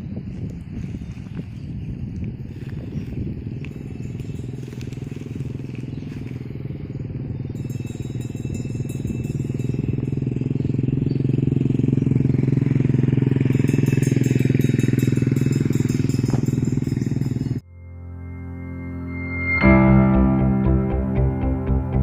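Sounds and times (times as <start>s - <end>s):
small engine running: 2.2s - 17.6s.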